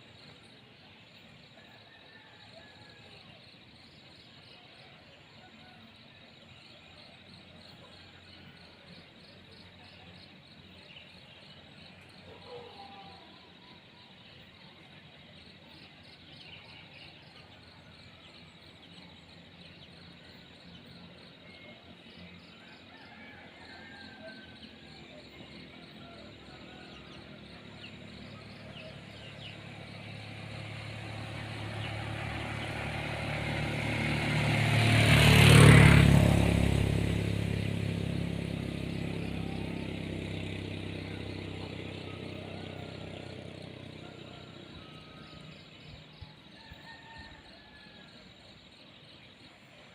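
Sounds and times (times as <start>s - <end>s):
vehicle engine driving past: 17.1s - 49.9s.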